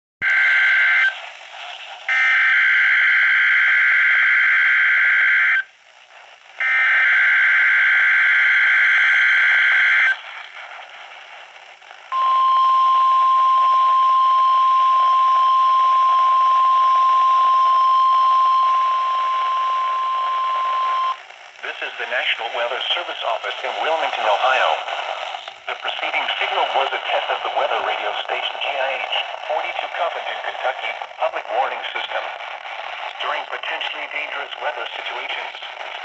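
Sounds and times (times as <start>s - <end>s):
static hiss: 1.0s - 2.9s, 5.2s - 36.0s
steady warning alarm tone: 12.2s - 21.2s.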